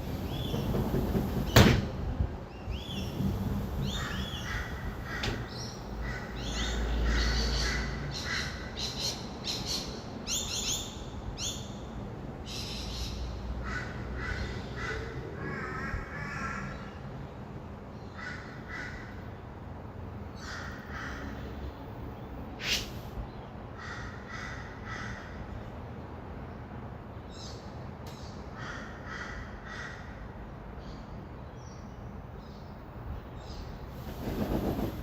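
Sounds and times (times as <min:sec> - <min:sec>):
distant traffic hum: 0:00.0 - 0:35.0
lorikeets screeching: 0:02.8 - 0:11.6.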